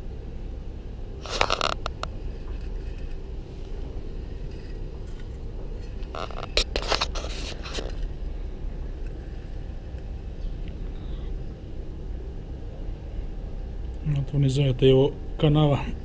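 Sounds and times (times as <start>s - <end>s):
scraping and clattering: 1.2s - 8.2s.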